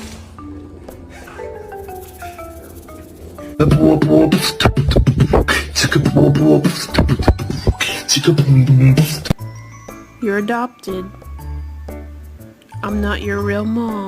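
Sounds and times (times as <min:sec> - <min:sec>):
beatboxing: 0:03.5 - 0:08.1
bell-like mallet tune: 0:09.4 - 0:11.9.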